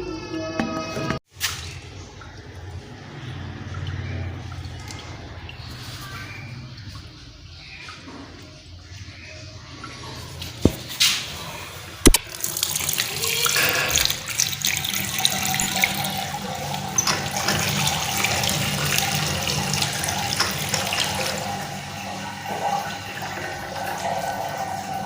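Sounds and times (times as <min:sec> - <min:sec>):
tap water splashing into basin: 0:12.0 - 0:21.6.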